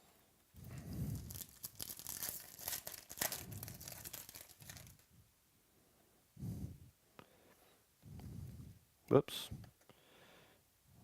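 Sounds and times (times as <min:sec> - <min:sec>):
card pack wrapper crinkling: 0:01.1 - 0:05.1.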